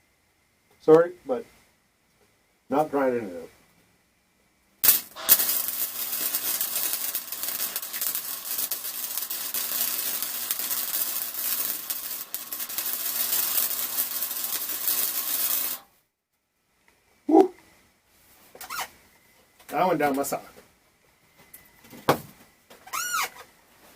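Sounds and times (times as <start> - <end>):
faint electrical hum: 0.0 - 23.9
arc welding crackling: 4.8 - 15.9.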